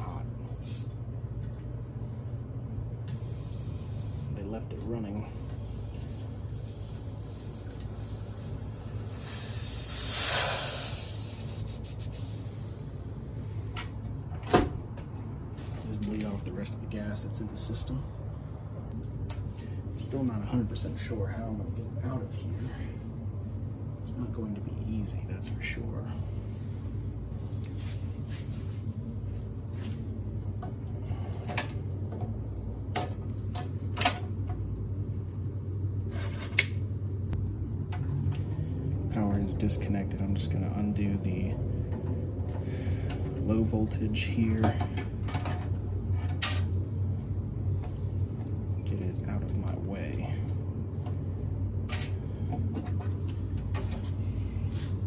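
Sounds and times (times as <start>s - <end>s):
steady low hum: 0.0s - 55.0s
refrigerant gas hissing: 0.5s - 1.1s, 3.0s - 4.6s, 5.2s - 13.9s.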